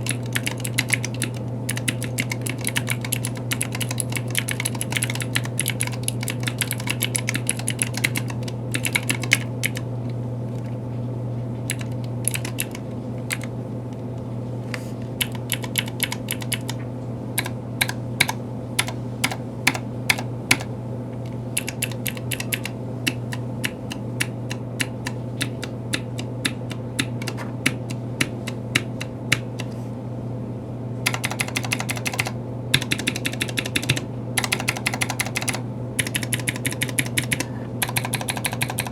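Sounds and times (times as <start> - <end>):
steady low hum: 0.0 - 38.9
mechanical keyboard key clicks: 11.7 - 13.5, 21.6 - 29.7, 31.1 - 38.9.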